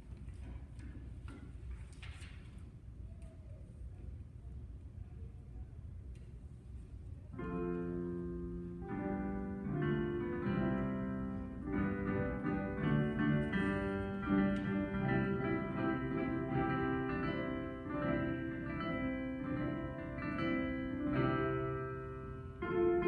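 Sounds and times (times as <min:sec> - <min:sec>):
piano music: 0:07.4 - 0:23.0.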